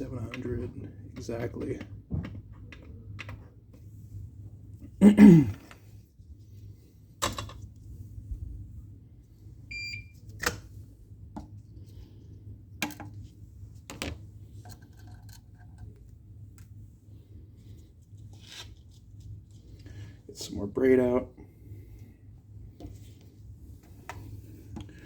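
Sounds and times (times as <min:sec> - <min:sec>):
soldering station beep: 0:09.7 - 0:10.2.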